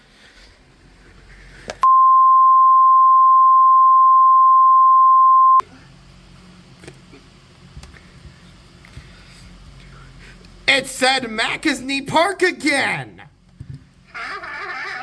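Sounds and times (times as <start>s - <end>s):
steady electronic tone: 1.8s - 5.6s.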